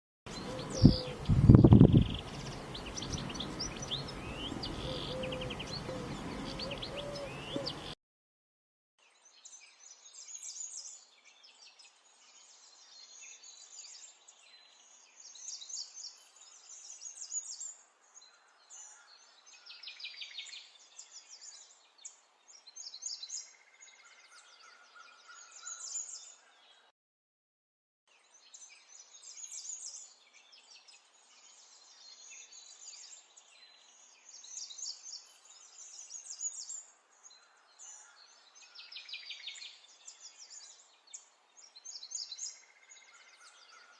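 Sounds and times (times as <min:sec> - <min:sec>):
birds chirping and singing: 0:00.3 - 0:08.0, 0:22.5 - 0:26.9, 0:28.3 - 0:43.9.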